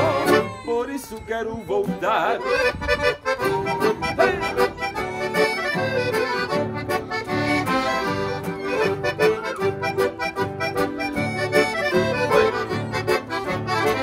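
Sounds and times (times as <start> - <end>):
accordion dance tune: 0.0 - 14.0
rhythmic accompaniment: 2.0 - 14.0.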